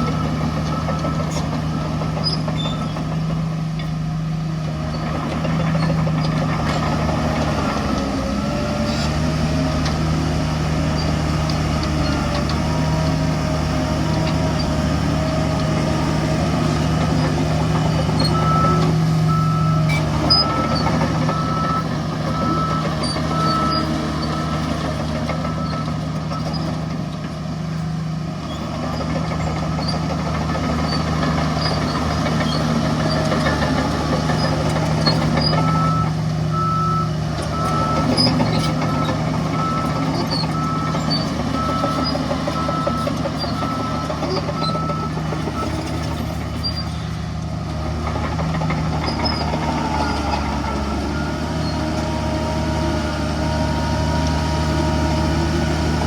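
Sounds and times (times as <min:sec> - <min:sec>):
reversing alarm beeping: 0:00.0 - 0:02.9, 0:17.1 - 0:26.7, 0:34.4 - 0:46.0, 0:49.1 - 0:55.3
heavy diesel machinery running: 0:00.0 - 0:56.0.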